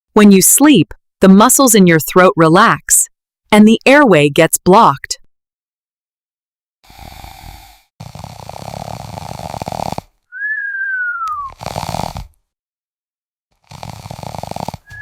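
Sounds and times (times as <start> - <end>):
person snoring: 6.8 - 10.2, 11.4 - 12.4, 13.6 - 15.0
falling whistle on exhale: 10.4 - 11.6.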